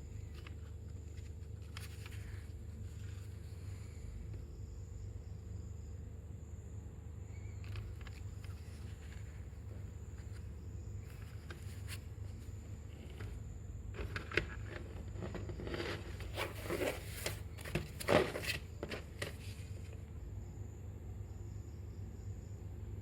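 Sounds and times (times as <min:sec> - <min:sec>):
cd packaging rustling and scraping: 0:00.0 - 0:03.6, 0:07.5 - 0:20.0
steady low hum: 0:00.0 - 0:23.0.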